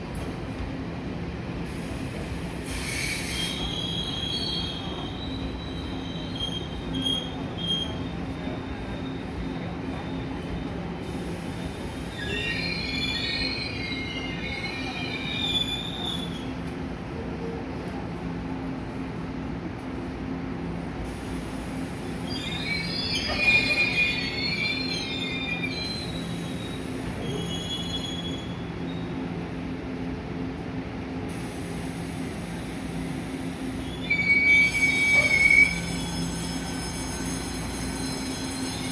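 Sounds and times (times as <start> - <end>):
train rumbling into station: 0.0 - 38.9
train wheels squealing: 1.7 - 16.5, 21.7 - 29.4, 32.3 - 38.9
wheels squealing: 22.3 - 28.6, 33.9 - 38.9.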